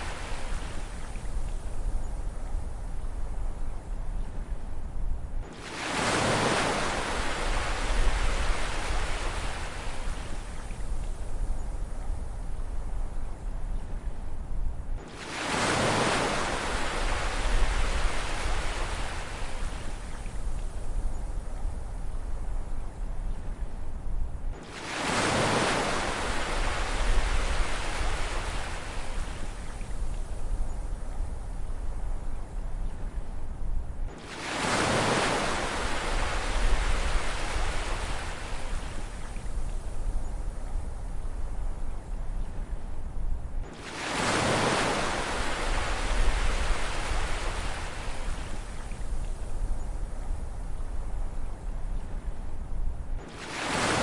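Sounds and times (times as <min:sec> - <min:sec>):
low rumble of sea: 0:00.0 - 0:54.0
wave breaking with surf: 0:05.5 - 0:10.5, 0:15.1 - 0:19.6, 0:24.6 - 0:29.6, 0:34.1 - 0:39.2, 0:43.7 - 0:48.8, 0:53.2 - 0:54.0
ocean wave breaking: 0:43.7 - 0:48.7, 0:53.3 - 0:54.0.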